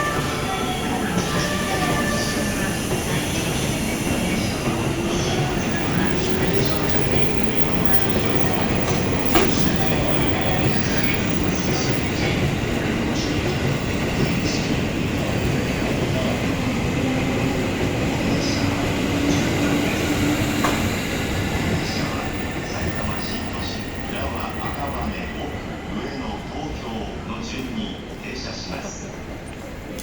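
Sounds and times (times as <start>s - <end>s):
electric train running noise: 0.0s - 27.3s
wheels clicking over rail joints: 4.7s - 16.2s.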